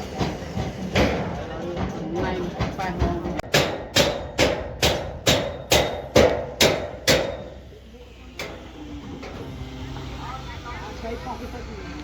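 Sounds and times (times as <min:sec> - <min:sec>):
hammer strikes: 0:00.0 - 0:07.6.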